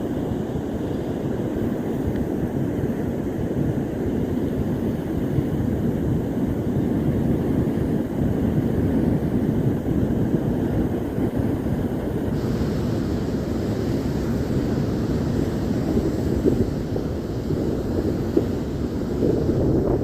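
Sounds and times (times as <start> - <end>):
ocean surf washing: 0.0 - 20.0
wind on microphone: 0.0 - 20.0
water hissing: 12.1 - 20.0.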